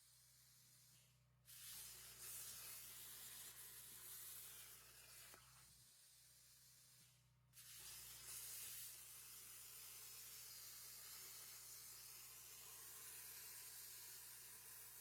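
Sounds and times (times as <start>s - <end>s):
plasma torch hissing: 0.0s - 15.0s.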